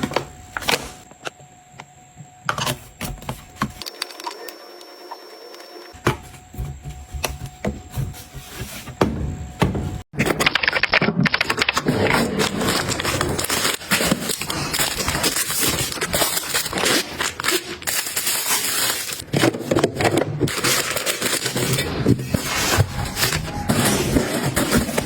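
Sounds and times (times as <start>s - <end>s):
packaging crinkling: 10.4s - 19.2s, 20.5s - 25.0s.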